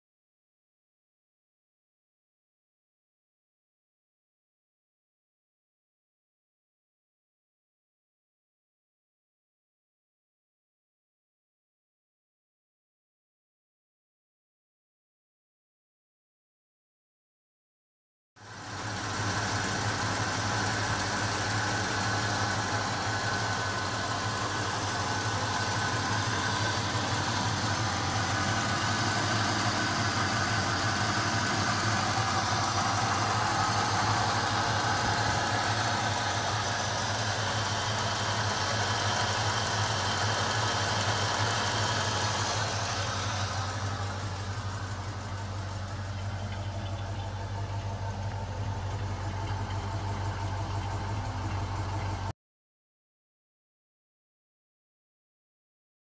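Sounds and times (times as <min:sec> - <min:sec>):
car engine idling: 0:18.4 - 0:52.3.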